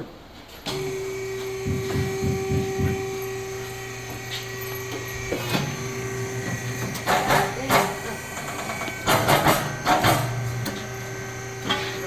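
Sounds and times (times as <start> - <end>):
tire changer motor humming: 0.6 - 12.0
sharp knocks: 1.6 - 3.1.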